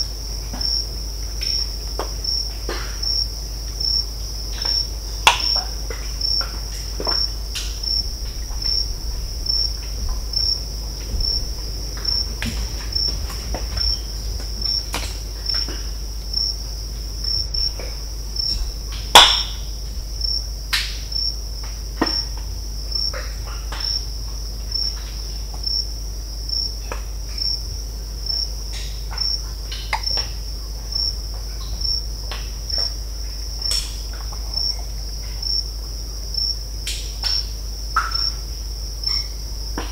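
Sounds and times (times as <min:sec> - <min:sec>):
crickets trilling: 0:00.0 - 0:39.9
cracks and pops from trees: 0:04.5 - 0:24.1, 0:33.6 - 0:34.4.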